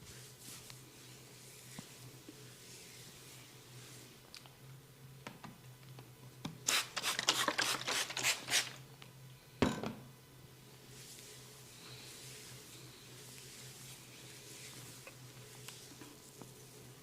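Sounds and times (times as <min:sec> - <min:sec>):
scratchy rubbing on head: 0:12.1 - 0:16.0.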